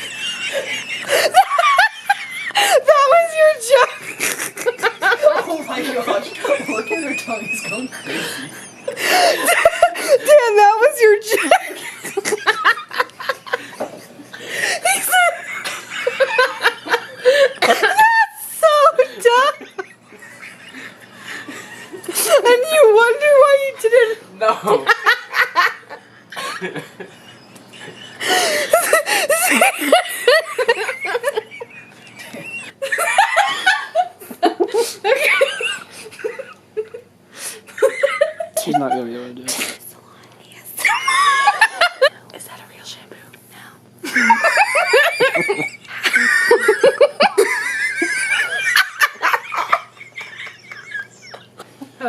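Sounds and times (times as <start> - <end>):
woman wheezing laughter: 0.0 - 3.0, 4.0 - 10.3, 11.3 - 22.6, 26.4 - 34.0, 44.0 - 51.7
woman's wheezing laugh: 0.0 - 3.0, 4.0 - 10.3, 44.0 - 51.7.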